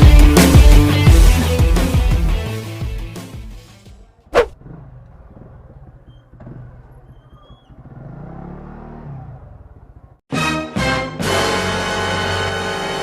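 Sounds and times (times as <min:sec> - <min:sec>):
music: 0:00.0 - 0:04.1, 0:10.3 - 0:13.0.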